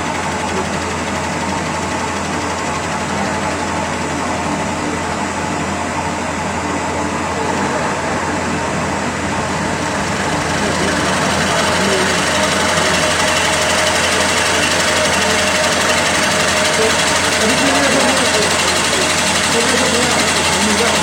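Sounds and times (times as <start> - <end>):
wood lathe humming: 0.0 - 21.0
lathe cutting hiss: 6.4 - 21.0.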